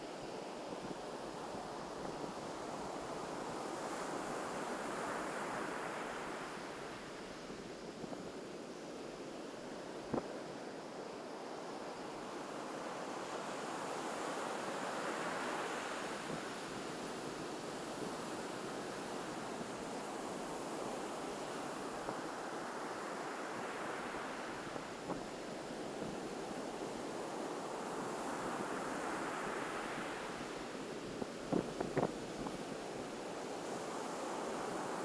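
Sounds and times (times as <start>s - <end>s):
ocean surf on sandy beach: 0.0s - 35.0s.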